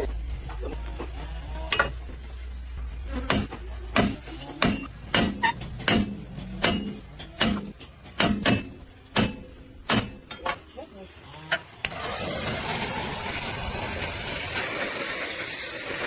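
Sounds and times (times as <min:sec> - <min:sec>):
hammer blows on metal: 0:03.2 - 0:10.3.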